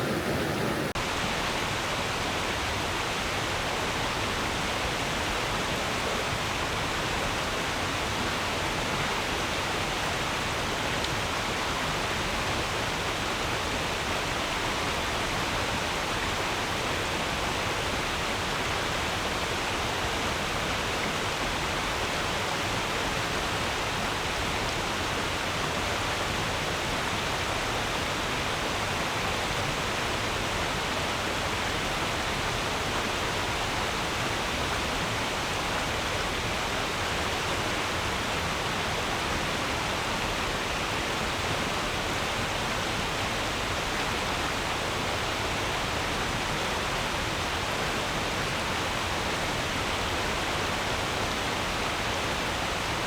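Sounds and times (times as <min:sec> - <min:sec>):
stream babbling over stones: 0:00.0 - 0:03.3.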